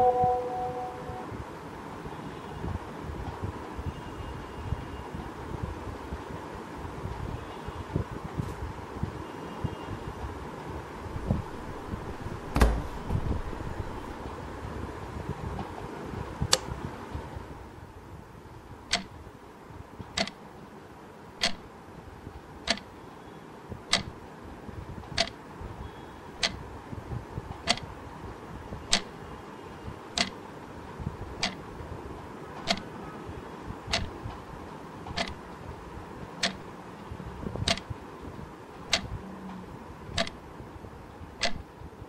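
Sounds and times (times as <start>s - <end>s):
low room hum: 0.0s - 1.8s, 10.2s - 42.0s
clock ticking: 18.9s - 19.1s, 20.2s - 20.4s, 21.4s - 21.6s, 22.7s - 22.9s, 23.9s - 24.1s, 30.2s - 30.4s, 32.6s - 32.8s, 33.9s - 34.2s, 35.1s - 35.4s, 36.4s - 36.6s.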